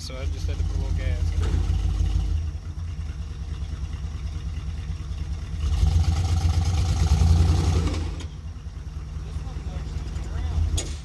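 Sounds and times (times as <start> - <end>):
truck engine rumbling: 0.0 - 11.0.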